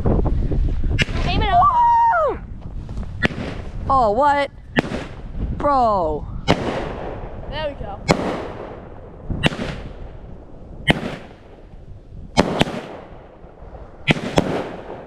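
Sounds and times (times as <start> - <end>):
firework shells banging: 14.1 - 15.0.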